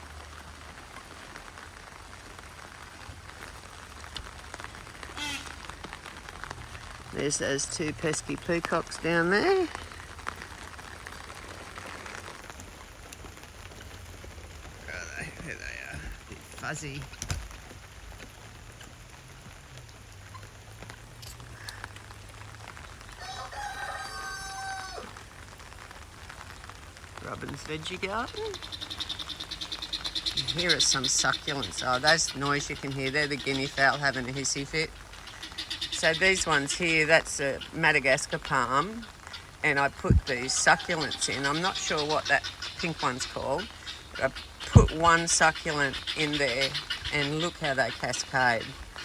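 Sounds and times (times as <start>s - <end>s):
rain pattering on an umbrella: 0.0s - 49.0s
fowl crowing: 23.2s - 25.2s, 40.2s - 42.8s
bird call: 27.8s - 37.0s.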